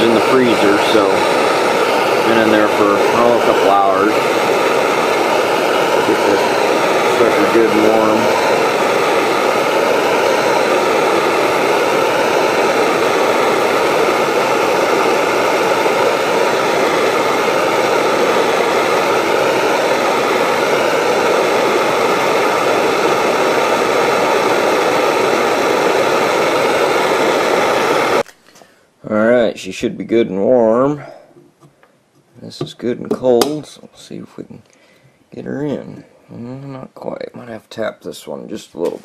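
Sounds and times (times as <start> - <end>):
faint wavering whine: 0.0 - 28.2
heat gun blowing: 0.0 - 28.7.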